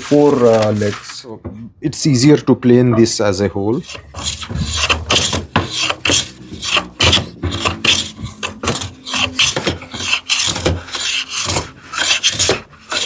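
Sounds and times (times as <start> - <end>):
hand plane shaving wood: 0.0 - 1.1, 3.8 - 13.0.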